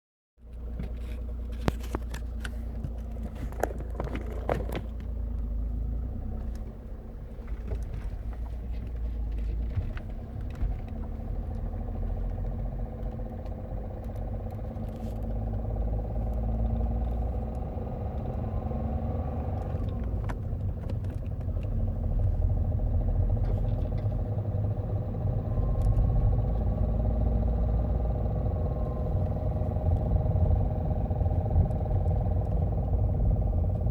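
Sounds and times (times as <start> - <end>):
diesel engine with clattering knock: 0.4 - 33.9.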